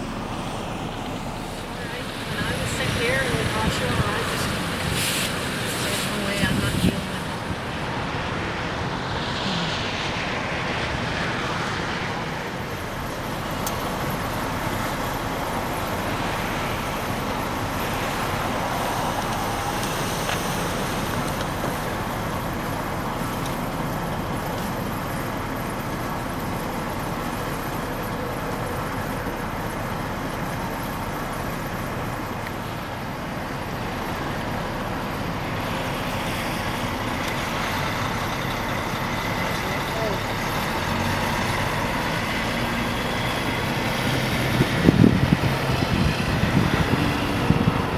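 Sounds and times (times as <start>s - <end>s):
road traffic and trucks: 0.0s - 47.9s.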